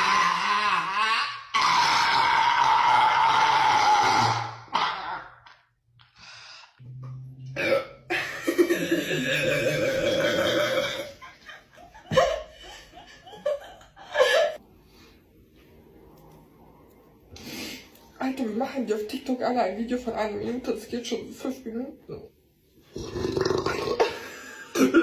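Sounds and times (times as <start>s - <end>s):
person burping: 0.0s - 5.4s, 7.5s - 11.2s, 22.9s - 25.0s.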